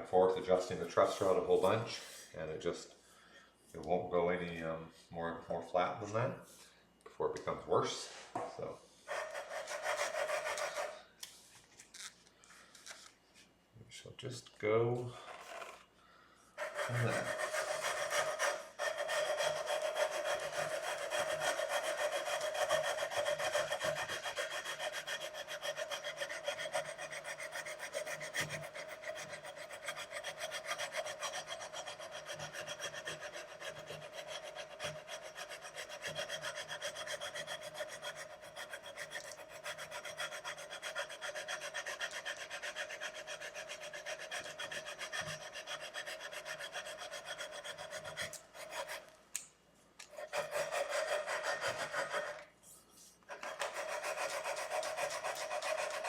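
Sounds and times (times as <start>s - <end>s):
sandpaper rubbing on guitar frets: 16.6s - 48.3s.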